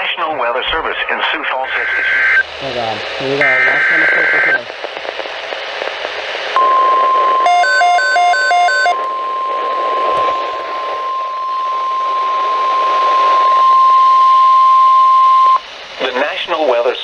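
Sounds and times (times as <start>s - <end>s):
radio static hiss: 0.0s - 17.0s
steady loud alarm tone: 6.6s - 10.1s.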